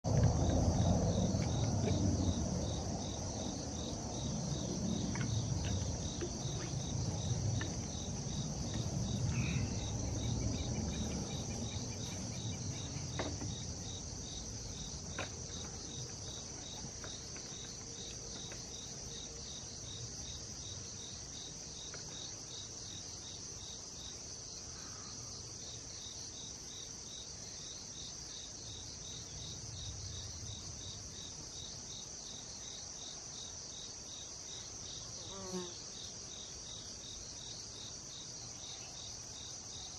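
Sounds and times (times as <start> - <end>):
crickets chirping: 0.0 - 39.9
low rumble: 0.1 - 12.9.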